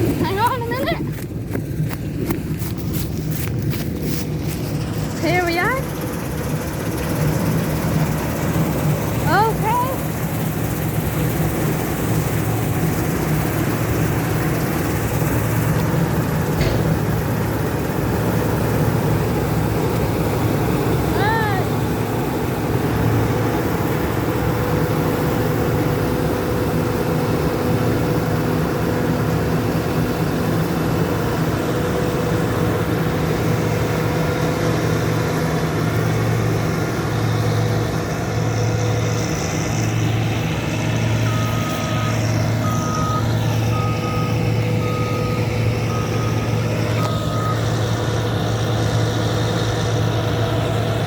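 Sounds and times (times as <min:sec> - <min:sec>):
combine harvester droning: 0:00.0 - 0:51.0
reversing alarm beeps: 0:41.1 - 0:48.0.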